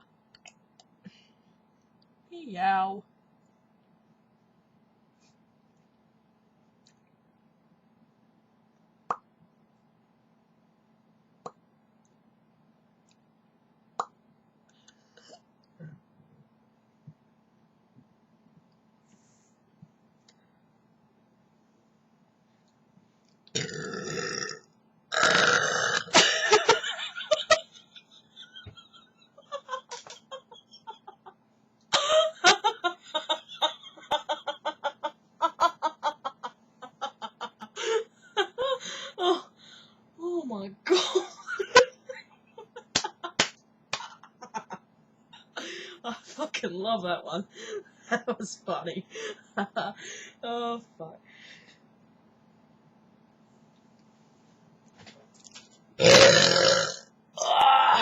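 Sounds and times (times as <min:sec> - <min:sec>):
faint low hum: 0:00.0 - 0:58.0
person laughing: 0:26.1 - 0:31.4, 0:32.0 - 0:39.5, 0:44.0 - 0:44.8
person hiccuping: 0:56.0 - 0:57.6.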